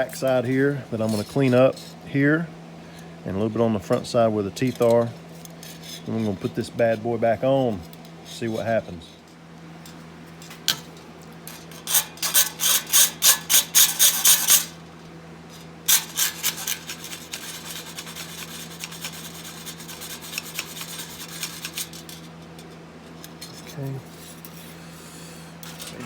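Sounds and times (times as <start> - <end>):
steady low hum: 0.0 - 26.0
metal file rasping on steel: 11.8 - 14.7, 15.9 - 22.2.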